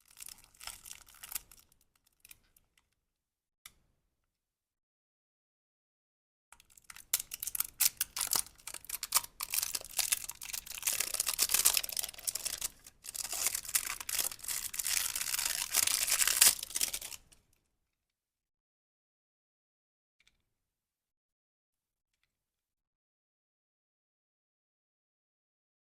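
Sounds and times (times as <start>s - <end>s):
packaging crinkling: 0.0s - 1.6s, 6.9s - 17.3s.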